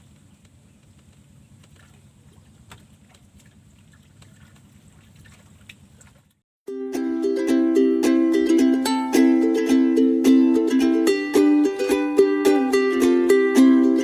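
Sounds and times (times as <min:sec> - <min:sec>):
light water sounds: 0:00.0 - 0:06.4.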